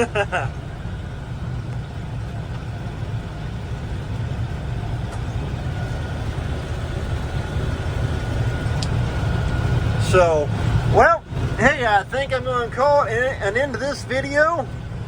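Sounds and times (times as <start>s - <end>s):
combine engine and machinery drone: 0.0s - 15.0s
faint steady whine: 0.0s - 15.0s.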